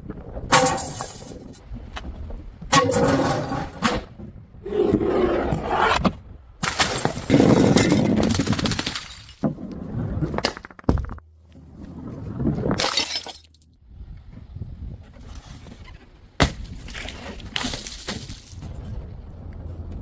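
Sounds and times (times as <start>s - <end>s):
glass bottles shattering: 0.5s - 1.6s, 6.6s - 9.4s, 12.8s - 13.6s.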